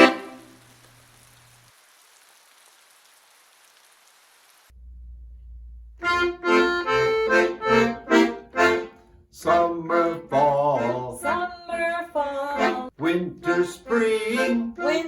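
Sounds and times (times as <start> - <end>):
children's song on reedy instrument: 0.0 - 0.5, 6.0 - 15.0
faint steady hiss: 0.0 - 4.8
low hum: 4.7 - 10.1.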